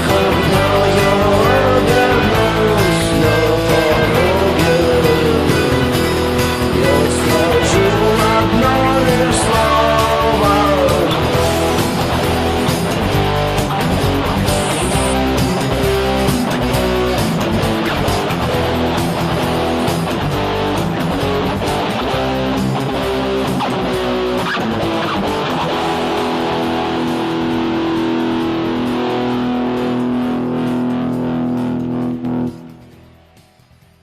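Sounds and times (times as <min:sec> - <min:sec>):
drum beat: 0:00.0 - 0:20.5
bass guitar: 0:00.0 - 0:34.0
electric guitar strumming: 0:00.0 - 0:34.0.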